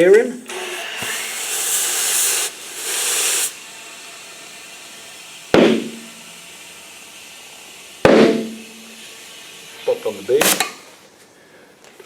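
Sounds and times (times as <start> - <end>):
compressed air hissing: 0.4 - 11.8
tyre bead popping bang: 5.6 - 6.0, 8.0 - 8.6.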